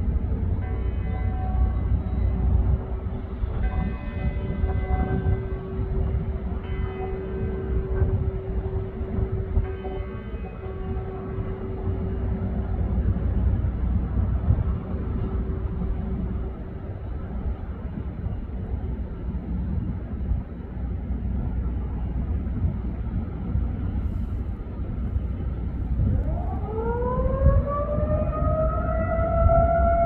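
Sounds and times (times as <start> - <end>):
continuous low rumble: 0.0 - 30.0
warning siren rising: 25.8 - 30.0.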